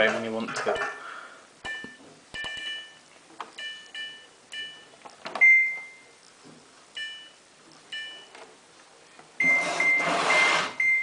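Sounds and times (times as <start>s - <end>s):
control panel beeping chirps: 1.6s - 6.1s.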